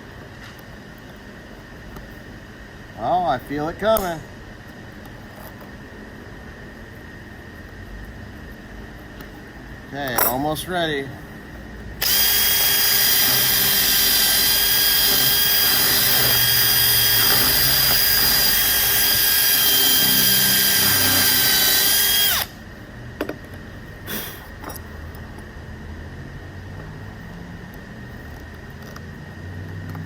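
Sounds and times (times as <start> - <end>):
electric drill boring into wood: 12.0 - 22.6.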